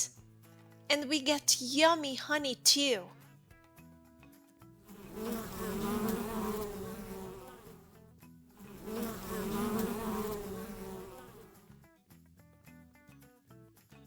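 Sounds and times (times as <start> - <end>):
bee buzzing: 4.9 - 7.9, 8.6 - 11.7.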